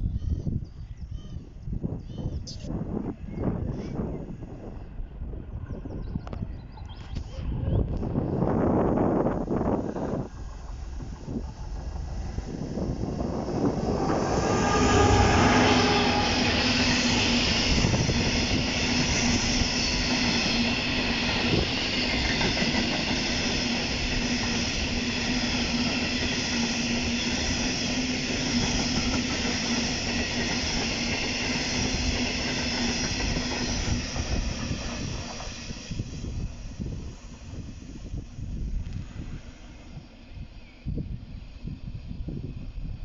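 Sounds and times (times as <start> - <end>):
train running past: 8.0 - 43.0.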